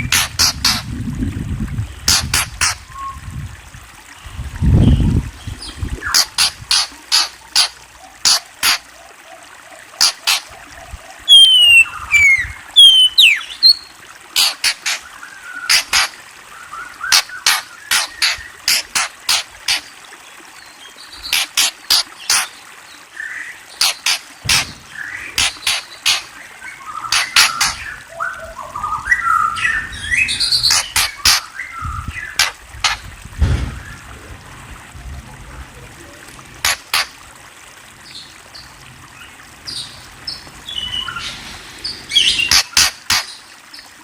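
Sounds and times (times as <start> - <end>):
songbird clicking calls: 0.0 - 0.9, 2.1 - 3.2, 6.0 - 9.0, 10.0 - 10.6, 11.3 - 16.2, 17.0 - 19.9, 21.2 - 22.6, 23.3 - 28.4, 30.5 - 33.1, 36.6 - 37.2, 42.1 - 43.4
bird whistled notes gliding down: 11.3 - 13.8
low thump: 33.3 - 33.9.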